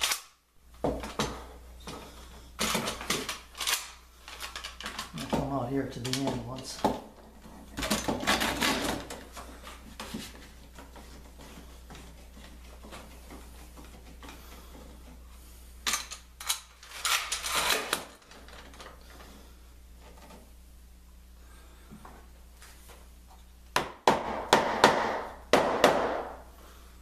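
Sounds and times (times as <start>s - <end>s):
low steady hum: 0.0s - 27.0s
objects clattering and scraping: 0.8s - 19.4s.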